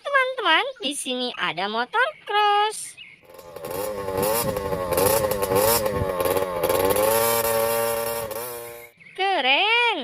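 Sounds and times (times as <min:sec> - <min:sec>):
dirt bike engine revving: 0:03.2 - 0:08.9.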